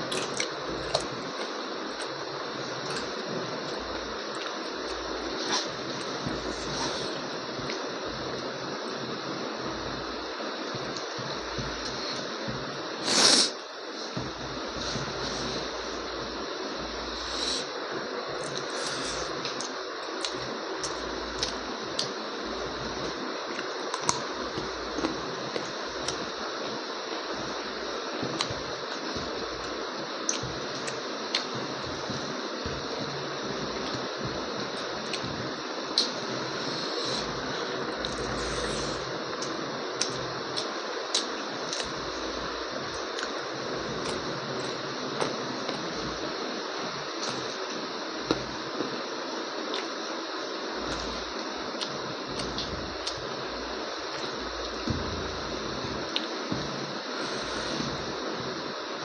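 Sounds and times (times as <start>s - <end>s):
steady background hiss: 0.0s - 59.0s
person eating with wet clicks: 0.1s - 2.2s, 19.4s - 22.2s, 23.5s - 26.2s, 28.3s - 33.2s, 39.3s - 42.1s, 49.7s - 50.0s, 51.8s - 53.2s.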